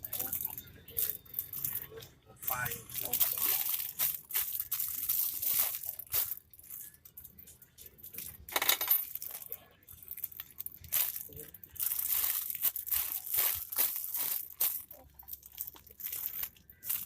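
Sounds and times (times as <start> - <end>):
plastic packaging crinkling: 2.6 - 7.0, 9.0 - 17.0.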